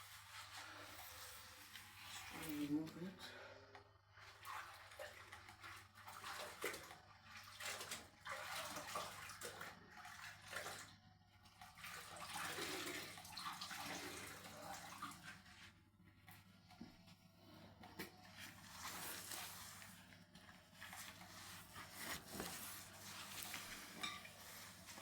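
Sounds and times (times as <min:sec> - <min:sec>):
water sloshing and splashing: 0:04.1 - 0:16.8, 0:18.3 - 0:25.0.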